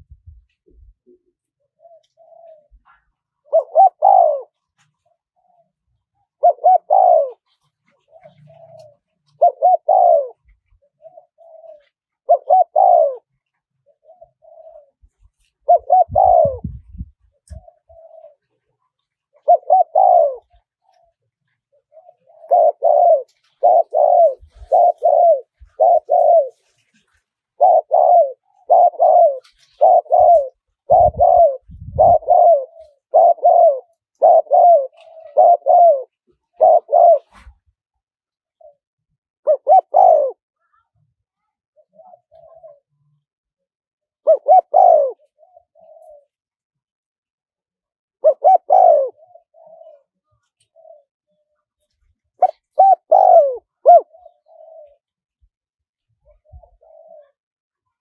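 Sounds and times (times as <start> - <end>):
dove cooing: 0.0 - 37.6, 38.6 - 38.8, 39.5 - 40.8, 41.4 - 43.2, 44.2 - 46.4, 48.2 - 51.5, 52.4 - 55.1, 56.2 - 57.4.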